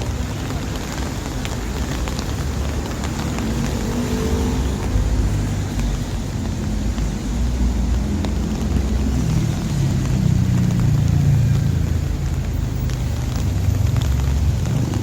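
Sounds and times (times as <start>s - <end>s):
vehicles passing: 0.0s - 15.0s.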